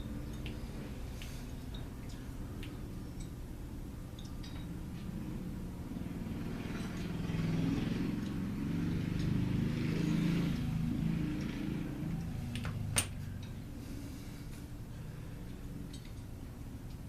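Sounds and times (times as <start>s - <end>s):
low motor hum: 0.0s - 17.0s.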